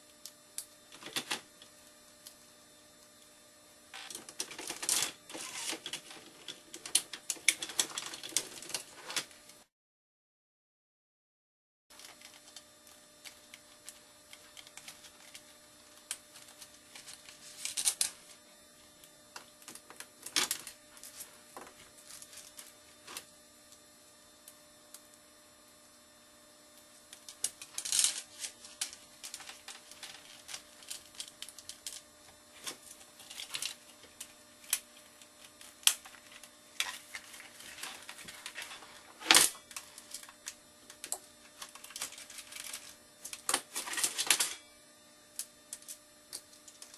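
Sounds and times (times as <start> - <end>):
faint steady hum: 0.0 - 9.7, 11.9 - 46.9
plastic parts clicking and scraping: 4.0 - 9.3, 35.4 - 44.6.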